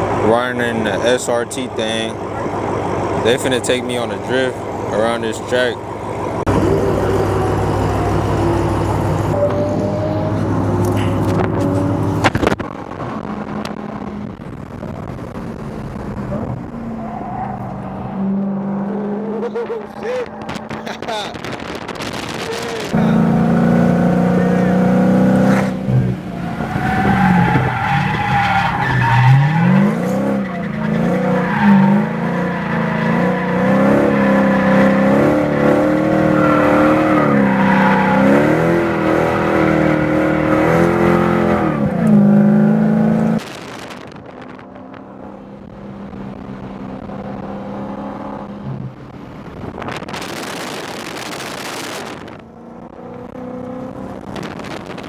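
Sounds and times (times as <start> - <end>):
tyres skidding: 0.0 - 44.7
car engine revving hard: 6.4 - 14.8, 21.4 - 44.0.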